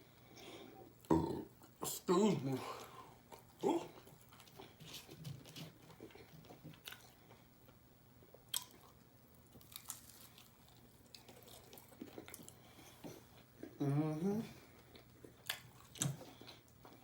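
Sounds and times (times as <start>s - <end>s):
chewing food close-up: 2.7s - 13.8s, 14.7s - 17.0s.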